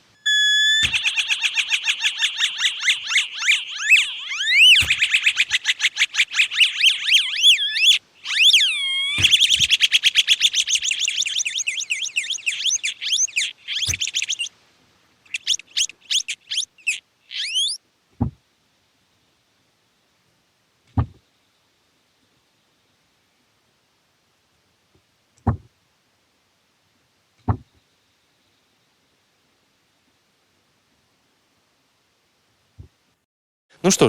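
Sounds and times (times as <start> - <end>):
electronic chirping beeps: 0.2 - 5.6, 6.4 - 9.6, 11.1 - 14.5, 15.4 - 17.8.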